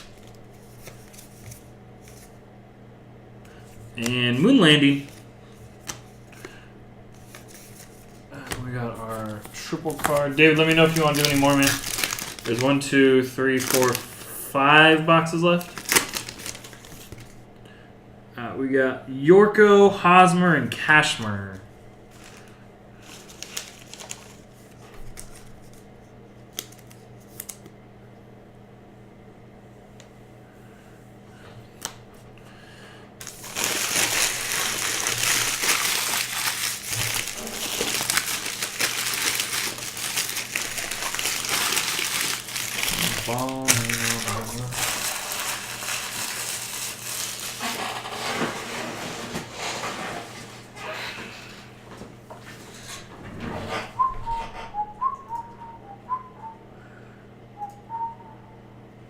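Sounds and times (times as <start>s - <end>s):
wrappers crinkling: 7.2s - 17.4s, 22.1s - 25.8s, 33.2s - 48.4s
person whistling a tune: 54.0s - 56.7s, 57.6s - 58.6s.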